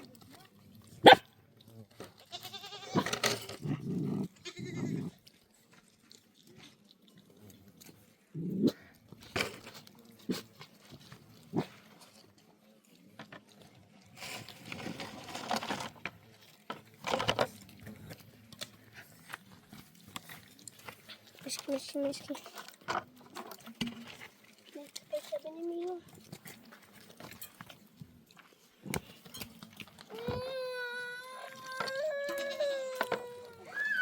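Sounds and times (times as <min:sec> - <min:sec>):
goats bleating: 0:02.2 - 0:03.0.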